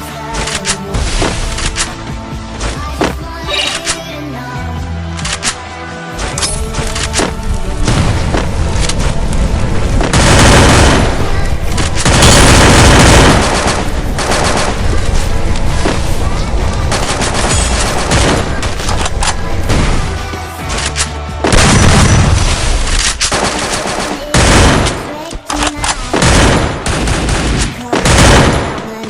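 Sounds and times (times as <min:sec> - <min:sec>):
background music: 0:00.0 - 0:29.0
video game automatic gunfire: 0:07.9 - 0:16.1, 0:16.8 - 0:20.2, 0:21.5 - 0:25.1, 0:25.9 - 0:29.0.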